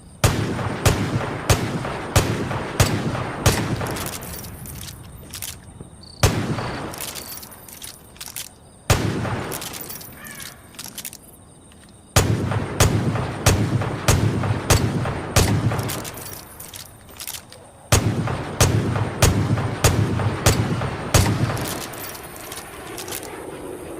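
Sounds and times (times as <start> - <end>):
revolver gunshots echoing: 0.2 - 5.0, 6.2 - 7.9, 8.9 - 10.6, 12.1 - 16.8, 17.9 - 23.2
rapid gunshots: 0.2 - 5.5, 6.2 - 7.6, 8.3 - 10.4, 12.2 - 16.9, 17.9 - 23.3.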